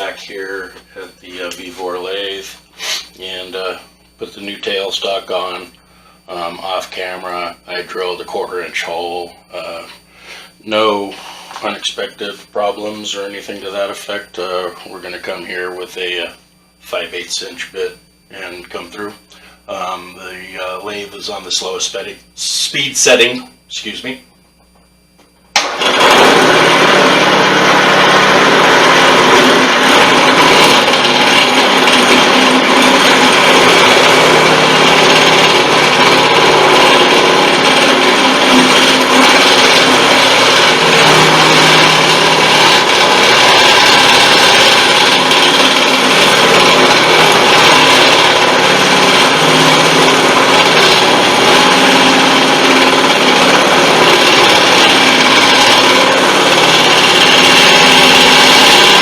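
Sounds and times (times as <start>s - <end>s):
lathe motor hum: 25.6s - 59.0s
drill bit scraping into wood: 25.8s - 59.0s.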